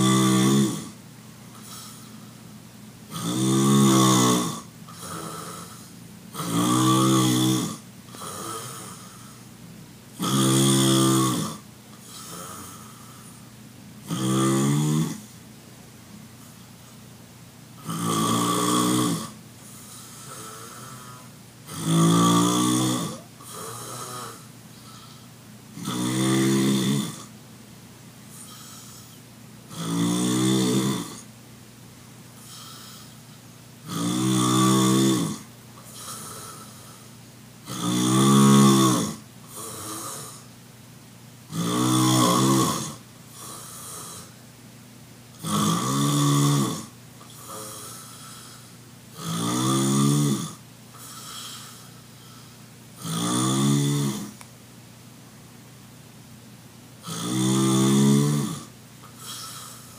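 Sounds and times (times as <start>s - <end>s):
man snoring loudly: 0.0s - 1.0s, 3.1s - 9.4s, 10.2s - 13.4s, 14.0s - 15.3s, 17.8s - 27.3s, 28.3s - 31.3s, 32.4s - 33.2s, 33.8s - 40.5s, 41.5s - 44.4s, 45.4s - 54.4s, 57.0s - 59.9s
breathy exhale: 1.6s - 2.4s, 8.2s - 9.5s, 12.0s - 13.4s, 23.4s - 25.4s, 28.3s - 29.2s, 32.4s - 33.5s, 35.8s - 37.2s, 47.3s - 48.8s, 51.0s - 52.7s, 59.1s - 59.9s.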